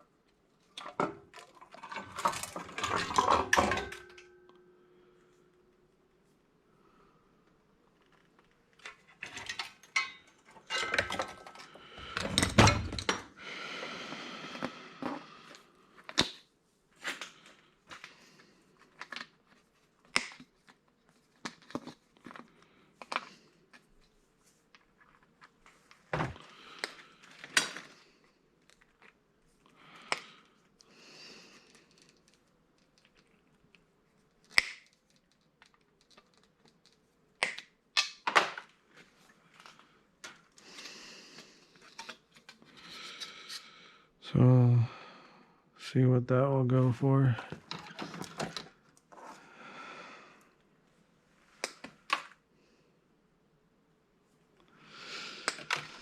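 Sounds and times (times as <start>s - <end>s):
metal parts clanking and clicking: 0.8s - 4.6s, 8.8s - 13.3s.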